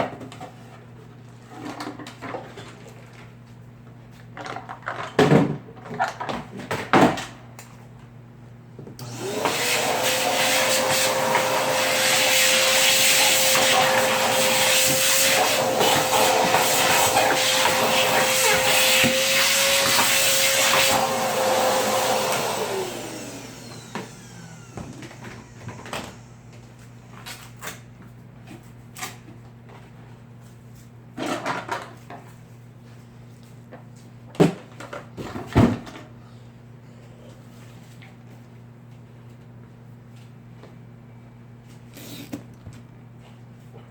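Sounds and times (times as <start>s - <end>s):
electric motor whining: 9.0s - 26.5s.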